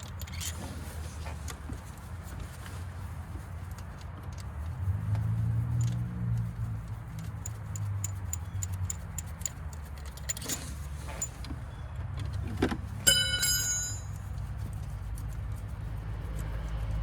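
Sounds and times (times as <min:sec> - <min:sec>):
brief metallic ring: 0:13.1 - 0:14.2.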